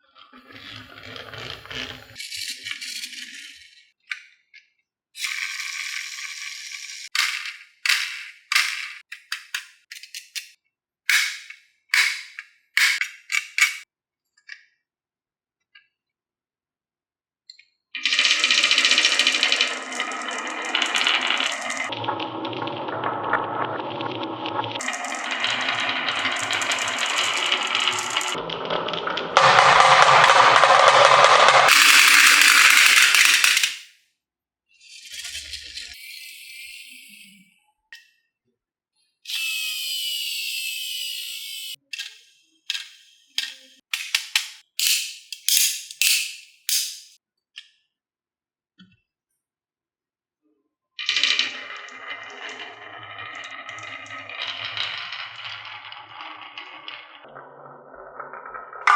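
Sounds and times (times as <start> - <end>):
marbles clacking on wooden track: 5.4 - 10.5, 11.1 - 13.8, 18.0 - 21.9, 24.8 - 33.9, 42.0 - 47.2, 51.0 - 58.9.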